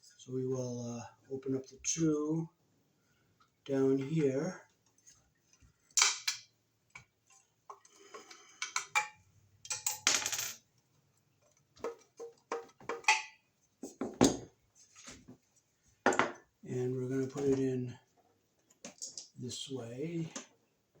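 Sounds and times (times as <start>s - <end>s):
metallic clinks and knocks: 8.2s - 10.6s, 18.9s - 19.3s.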